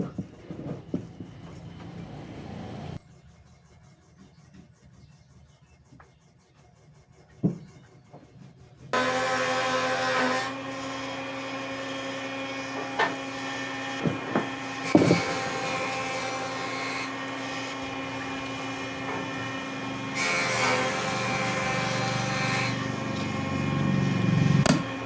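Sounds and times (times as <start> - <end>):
sharp knocks: 24.6 - 25.0.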